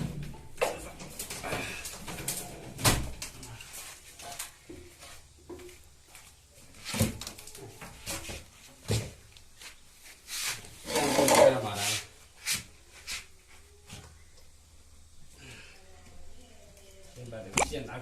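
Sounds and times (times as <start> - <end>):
faint rattling of parts: 0.0 - 9.6.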